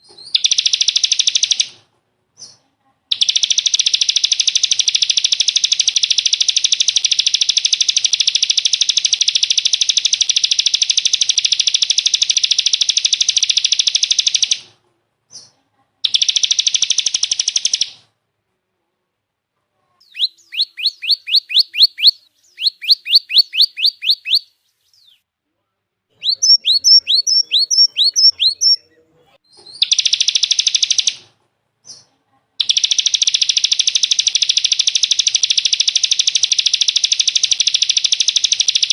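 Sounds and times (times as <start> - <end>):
rapid buzzy bird trill: 3.1 - 14.6, 20.0 - 25.2, 26.2 - 28.8, 32.6 - 38.9
sharp downward-slurred bird notes: 26.2 - 28.9.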